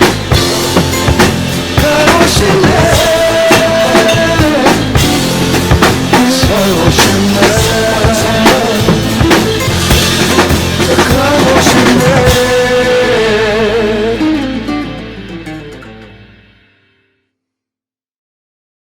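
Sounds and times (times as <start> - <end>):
drum kit hits: 0.0 - 14.2
pop song with guitar and band: 0.0 - 16.5.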